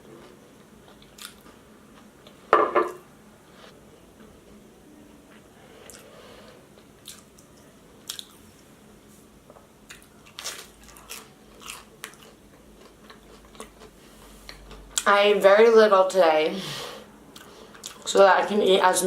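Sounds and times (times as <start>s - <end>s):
chewing and crunching food: 0.0s - 2.4s, 6.7s - 8.7s, 9.5s - 15.1s, 17.3s - 18.2s.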